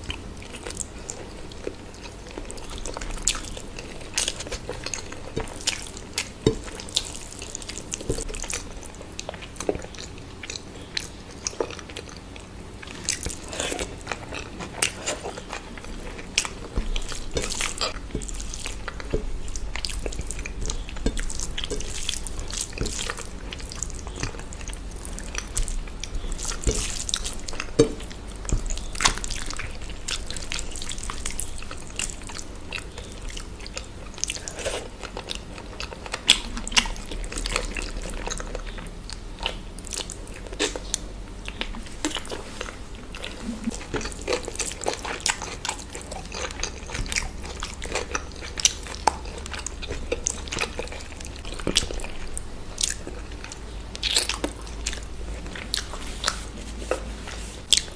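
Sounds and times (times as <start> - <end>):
person chewing food: 0.0 - 57.9.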